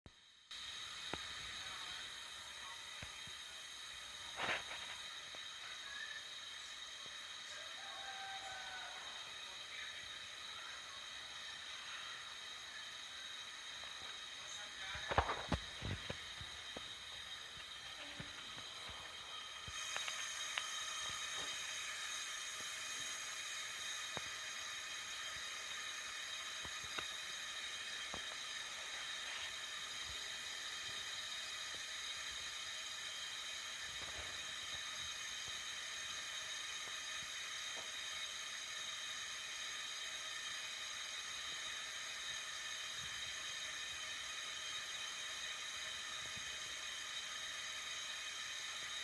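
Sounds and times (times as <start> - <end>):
gas stove burner hissing: 0.0 - 49.0
faint ticks: 15.1 - 22.2.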